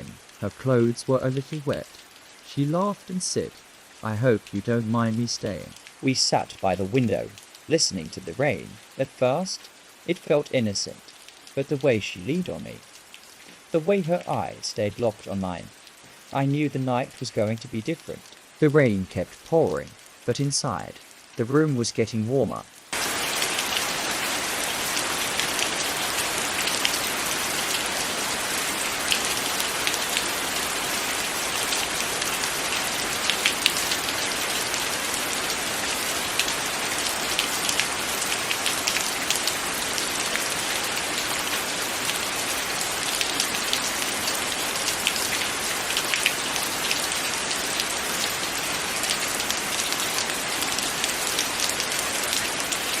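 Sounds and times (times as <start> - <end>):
heavy rain falling: 0.0 - 53.0
sharp raindrop ticks: 22.9 - 53.0.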